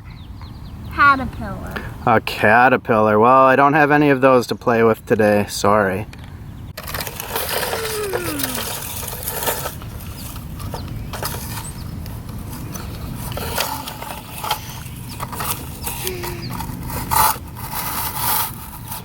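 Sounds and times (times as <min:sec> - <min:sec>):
toy bucket scraping soil: 0:06.8 - 0:19.0.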